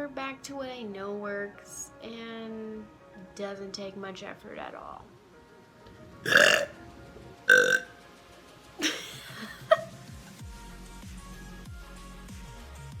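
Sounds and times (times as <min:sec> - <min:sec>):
woman belching: 0:06.3 - 0:06.7, 0:07.5 - 0:07.9.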